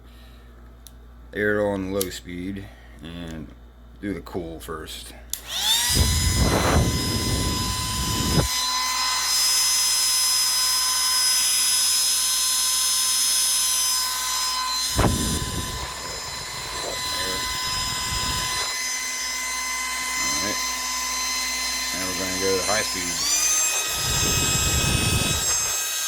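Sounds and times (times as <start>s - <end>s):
hair dryer motor whine: 5.4s - 26.0s.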